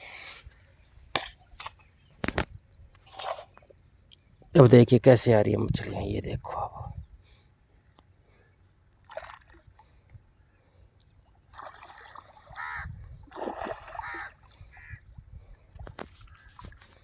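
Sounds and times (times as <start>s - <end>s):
water splashing from fish: 9.0s - 10.0s, 11.4s - 14.9s
crows cawing: 12.5s - 12.9s, 13.9s - 15.0s.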